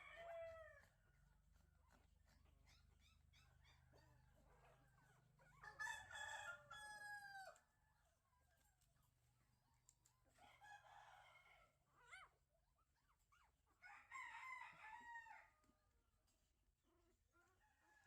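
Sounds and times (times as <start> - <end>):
rooster crowing: 5.6 - 7.6, 13.8 - 15.5.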